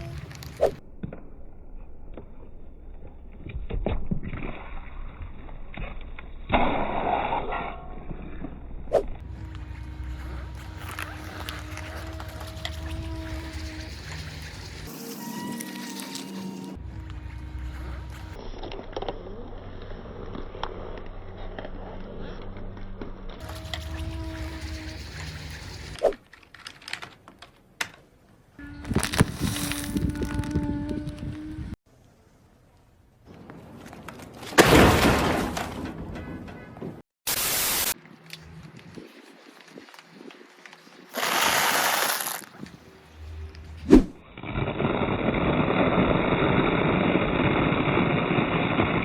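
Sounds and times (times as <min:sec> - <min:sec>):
car engine rumbling low: 0:09.2 - 0:14.9, 0:16.8 - 0:20.2
tyre crushing food crackles: 0:39.1 - 0:42.6
short hiss: 0:41.1 - 0:42.5
tyre crushing object: 0:41.2 - 0:42.6.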